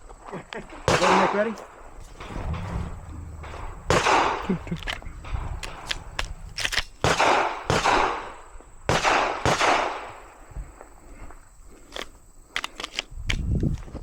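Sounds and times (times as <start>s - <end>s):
handgun shots echoing: 5.3s - 8.3s.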